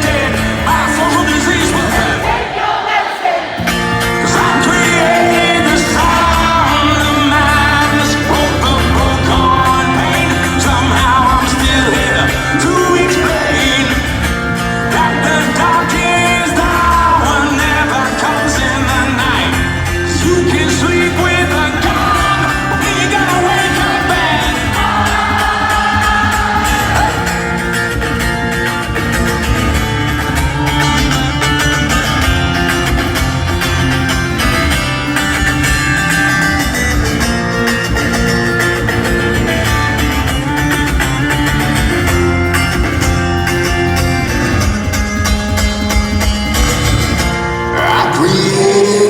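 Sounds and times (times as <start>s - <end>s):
bass guitar: 0.0s - 2.4s, 3.6s - 49.0s
electric guitar: 0.0s - 2.4s, 3.6s - 49.0s
person singing: 0.0s - 27.6s, 47.7s - 49.0s
drum beat: 20.2s - 36.2s.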